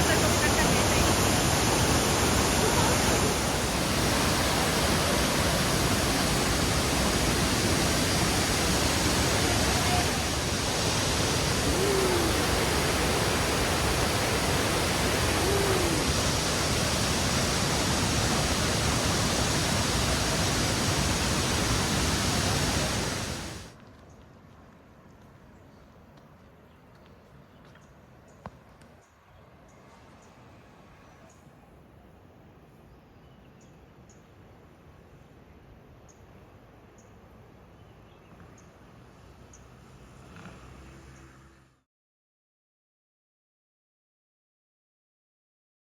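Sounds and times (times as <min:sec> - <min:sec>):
waterfall roaring: 0:00.0 - 0:23.7.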